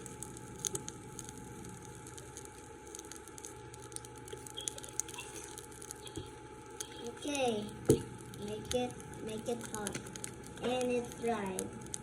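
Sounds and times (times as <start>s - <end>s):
crackling pops: 0.0s - 12.0s.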